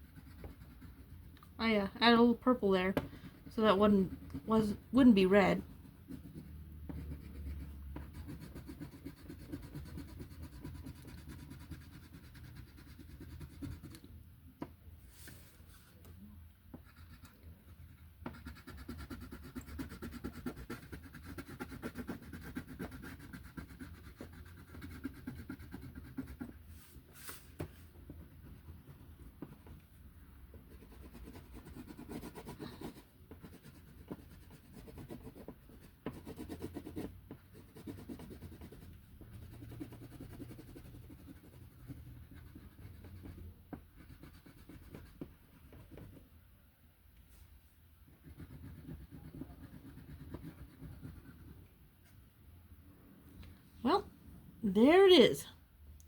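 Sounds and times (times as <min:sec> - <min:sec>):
colouring tool scratching on paper: 0:00.0 - 0:01.4, 0:03.1 - 0:14.1, 0:16.7 - 0:29.8, 0:30.6 - 0:46.3, 0:48.1 - 0:51.6.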